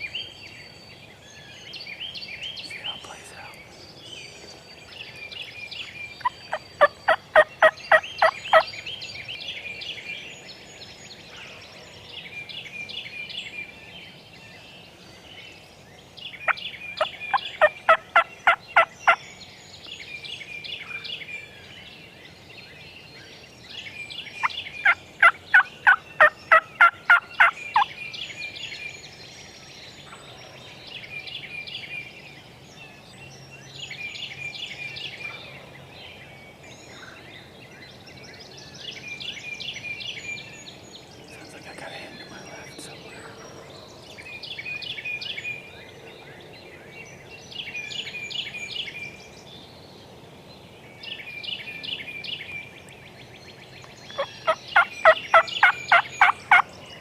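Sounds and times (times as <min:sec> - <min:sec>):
songbirds chirping: 0:00.0 - 0:57.0
turkey yelps: 0:54.2 - 0:56.6.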